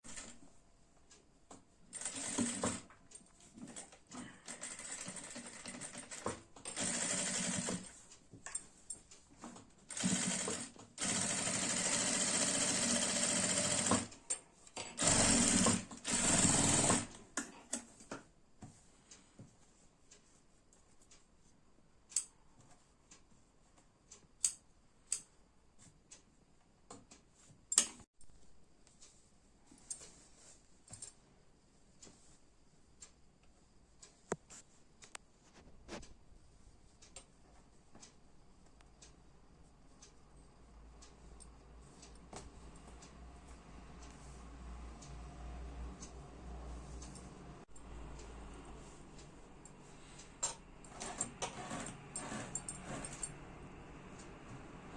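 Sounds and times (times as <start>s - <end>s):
sewing machine stitching: 1.9s - 2.9s, 3.6s - 8.0s, 9.9s - 14.2s, 14.8s - 17.2s, 50.9s - 53.3s.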